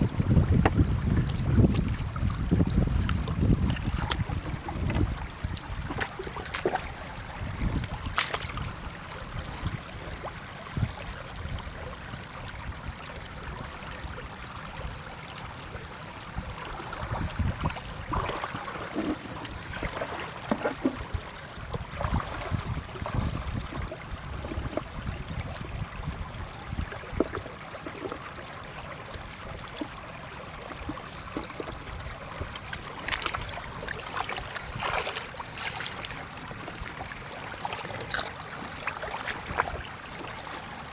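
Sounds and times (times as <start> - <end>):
shallow water splashing: 16.6 - 25.5, 26.9 - 40.9.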